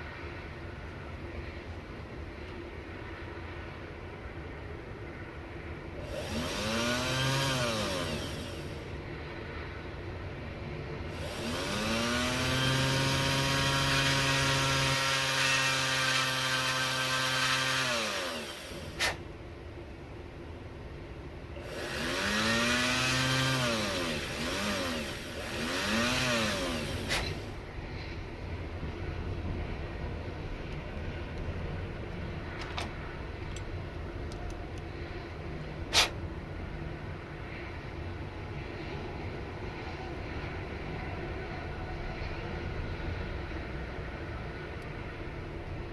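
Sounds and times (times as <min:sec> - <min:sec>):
power tool motor spinning: 0:06.0 - 0:08.9, 0:11.1 - 0:19.2, 0:21.6 - 0:27.6
sharp click: 0:35.9 - 0:36.2.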